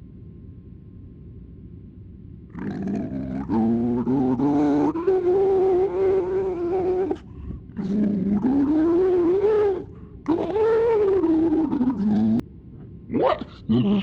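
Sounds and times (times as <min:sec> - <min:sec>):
distorted voice moaning: 0:02.6 - 0:12.4, 0:13.1 - 0:14.0.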